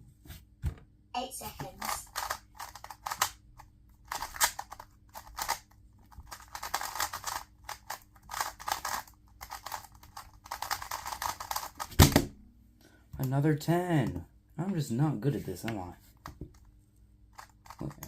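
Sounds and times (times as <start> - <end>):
speed cube plastic clicking: 2.1 - 3.4, 4.1 - 11.9, 17.3 - 18.0.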